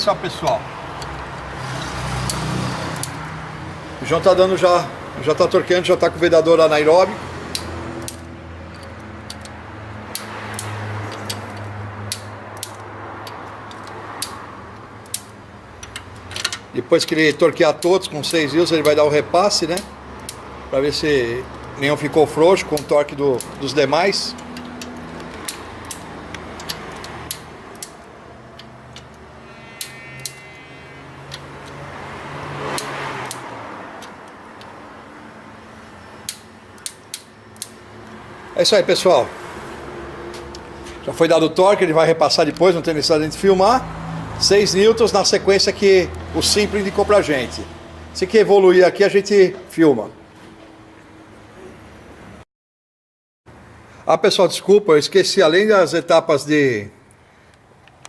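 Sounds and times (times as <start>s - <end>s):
torque wrench clicking: 0.9s - 3.3s, 7.5s - 14.4s, 15.0s - 19.0s, 19.6s - 20.5s, 24.2s - 29.2s, 32.7s - 34.8s, 36.2s - 37.8s.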